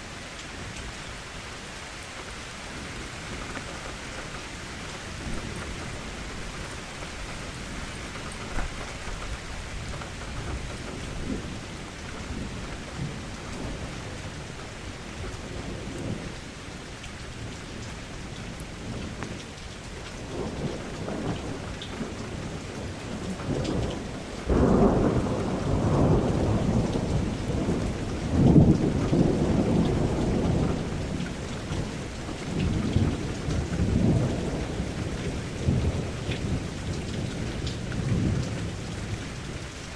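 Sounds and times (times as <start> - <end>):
steady rain falling: 0.0 - 39.9
low rolling thunder: 2.7 - 19.5, 20.1 - 39.9.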